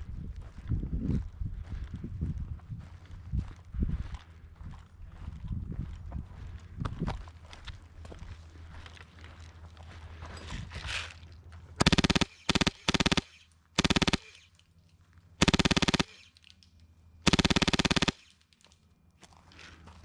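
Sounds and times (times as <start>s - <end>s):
airsoft gun full-auto bursts: 11.8s - 14.5s, 15.4s - 16.4s, 17.2s - 18.5s.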